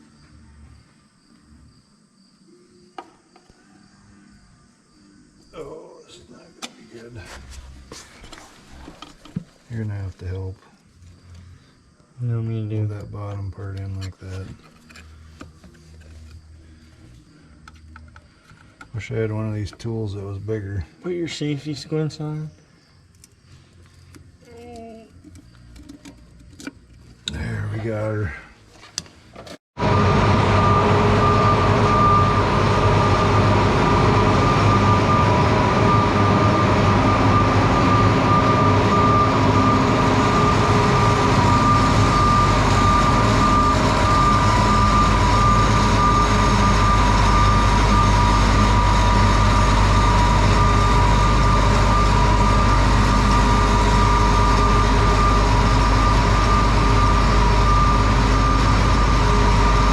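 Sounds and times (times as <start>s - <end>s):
heavy vehicle engine running: 29.8s - 59.9s
two-note high whine: 29.8s - 59.9s.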